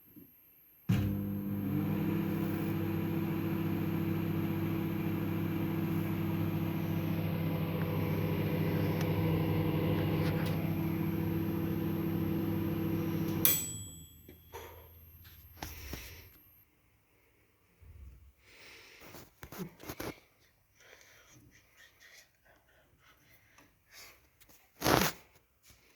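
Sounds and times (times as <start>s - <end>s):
microwave oven humming: 0.5s - 16.2s
microwave click: 0.9s - 14.9s.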